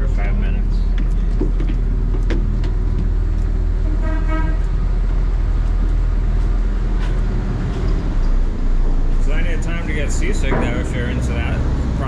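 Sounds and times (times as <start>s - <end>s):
ferry diesel engines rumbling: 0.0s - 12.0s
ferry horn toot: 3.8s - 4.8s.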